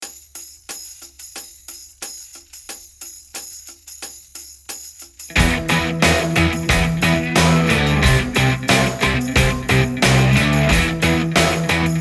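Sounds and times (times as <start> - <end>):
jingly percussion beat: 0.0 - 12.0
rock band playing: 5.3 - 12.0.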